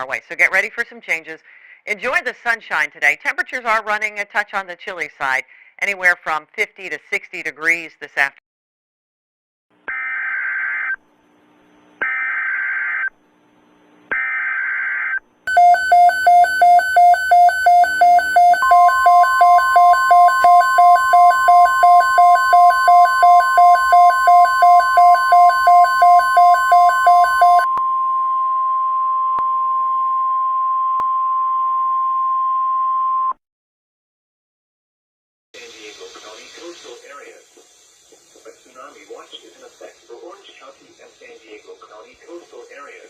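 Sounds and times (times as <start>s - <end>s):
steady single-pitched warning tone: 15.5s - 27.7s.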